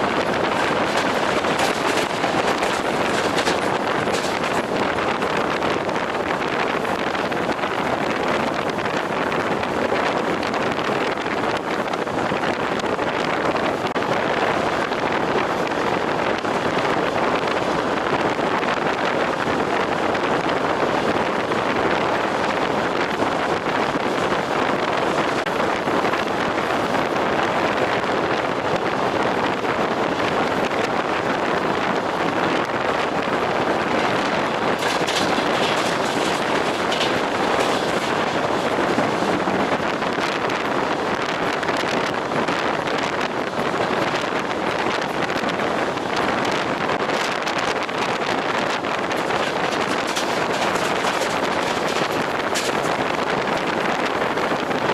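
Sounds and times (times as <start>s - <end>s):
train clattering: 0.0s - 47.2s, 47.8s - 54.9s
train wheels rolling on rails: 0.0s - 54.9s.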